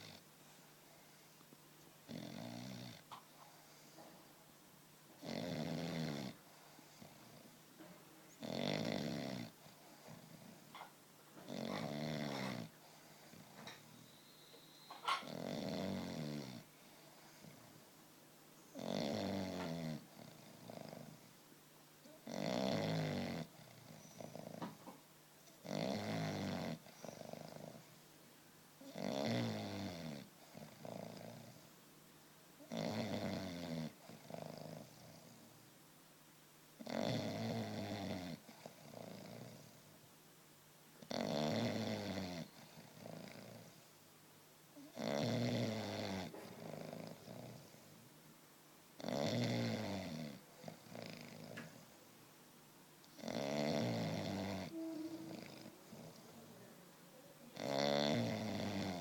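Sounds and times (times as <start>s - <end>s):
dog snoring: 0.0s - 0.2s, 2.1s - 4.0s, 5.2s - 7.5s, 8.4s - 17.8s, 18.7s - 21.3s, 22.0s - 28.0s, 28.8s - 31.7s, 32.6s - 35.5s, 36.8s - 39.9s, 41.0s - 43.9s, 44.8s - 48.0s, 49.0s - 51.9s, 53.1s - 56.6s, 57.5s - 59.0s.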